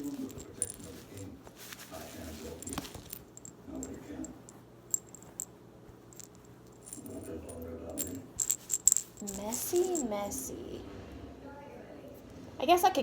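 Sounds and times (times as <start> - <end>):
hands rustling plush toys: 0.0 - 7.3, 8.0 - 10.2.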